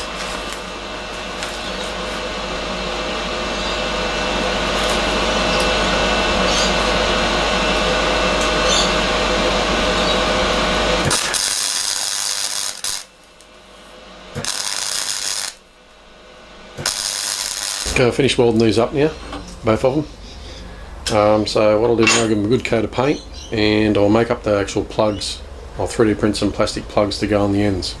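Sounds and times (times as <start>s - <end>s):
welding crackle: 0.0s - 2.3s, 4.7s - 5.9s, 10.6s - 13.6s, 14.3s - 16.0s, 16.8s - 18.7s
machine hum: 0.0s - 28.0s.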